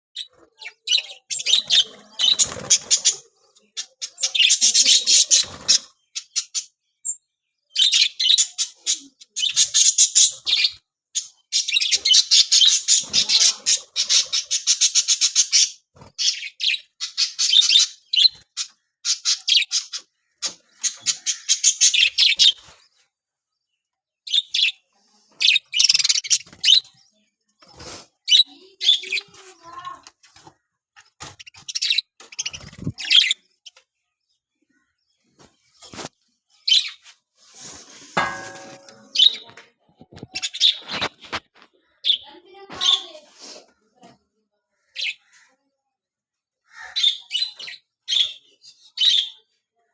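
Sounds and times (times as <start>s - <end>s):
budgerigars chattering: 7.8s - 22.6s.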